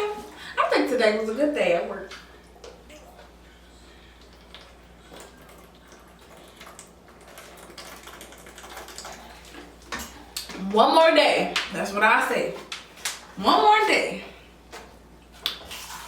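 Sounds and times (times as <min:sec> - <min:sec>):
low steady hum: 0:00.0 - 0:16.0
chewing and mouth sounds: 0:04.2 - 0:10.5.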